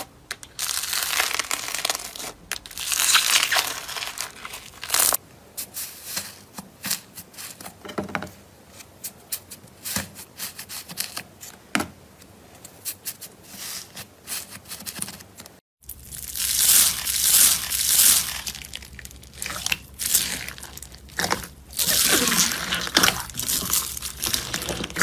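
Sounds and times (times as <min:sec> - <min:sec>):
slime crackling: 0:00.4 - 0:05.2, 0:15.9 - 0:25.0.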